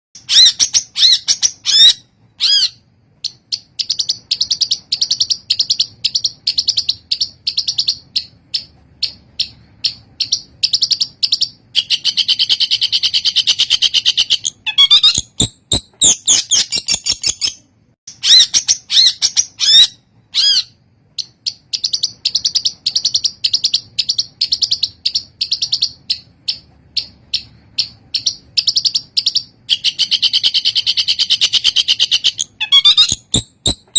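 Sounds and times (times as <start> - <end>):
bird singing rapid sharp notes: 0.2 - 33.9
very fast bird trill: 0.2 - 33.9.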